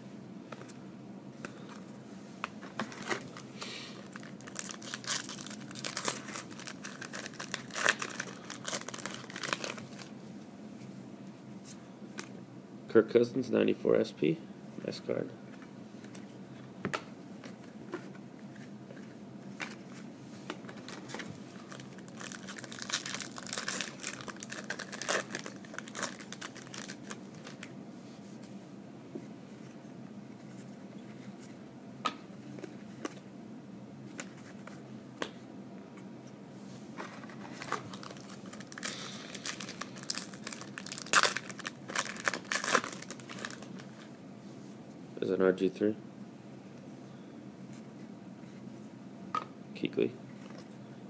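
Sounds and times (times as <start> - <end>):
foil wrapper crinkling and tearing: 4.0 - 10.1, 20.8 - 27.7, 37.4 - 44.1.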